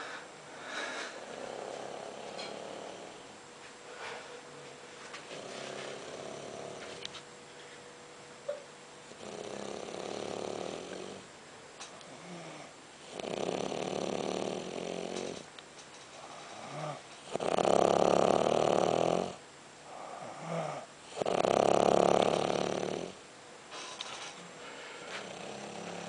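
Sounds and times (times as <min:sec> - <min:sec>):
soft breaths: 0:00.0 - 0:03.2, 0:23.7 - 0:26.0
person snoring: 0:00.6 - 0:03.2, 0:05.4 - 0:06.9, 0:09.2 - 0:11.3, 0:12.0 - 0:15.4, 0:16.2 - 0:23.2, 0:25.1 - 0:26.0.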